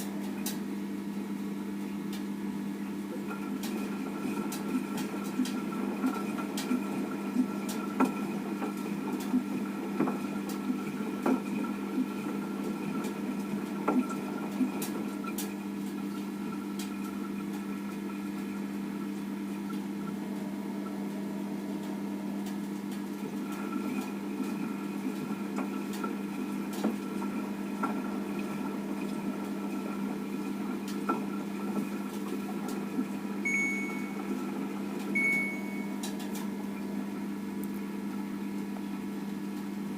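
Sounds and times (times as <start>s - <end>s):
washing machine motor hum: 0.0s - 39.9s
high electronic beep: 33.5s - 34.2s, 35.2s - 35.9s.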